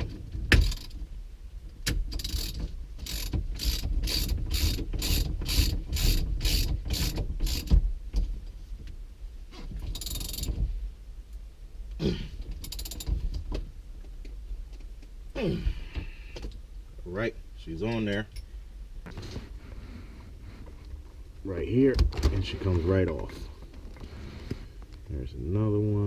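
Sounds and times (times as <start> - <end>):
ratchet wrench ratcheting: 0.5 - 1.0, 2.1 - 7.7, 9.9 - 10.5, 12.6 - 13.1.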